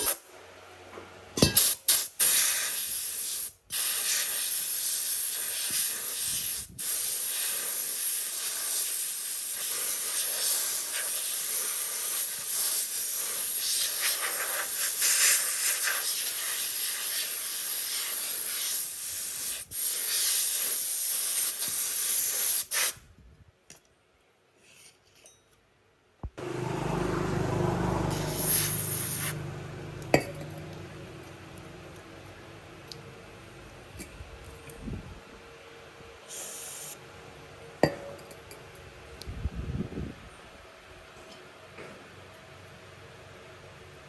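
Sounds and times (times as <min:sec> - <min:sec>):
pressurised air hissing: 0:01.6 - 0:23.0, 0:28.1 - 0:29.4, 0:36.3 - 0:37.0.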